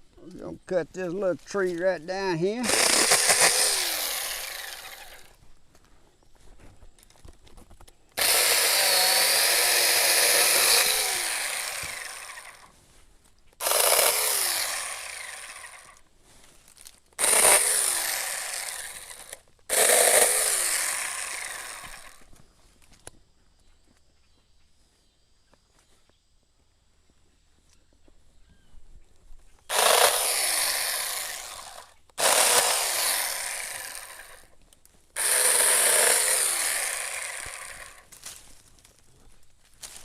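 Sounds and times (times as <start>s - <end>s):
electric chainsaw cutting: 1.4s - 5.4s, 8.2s - 12.8s, 13.6s - 16.0s, 17.2s - 22.3s, 29.7s - 34.5s, 35.2s - 38.4s.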